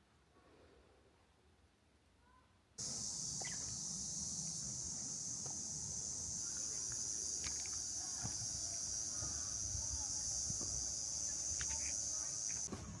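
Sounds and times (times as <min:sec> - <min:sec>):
high-pitched insect chorus: 0:02.8 - 0:12.7
faint short chirps: 0:03.2 - 0:03.8.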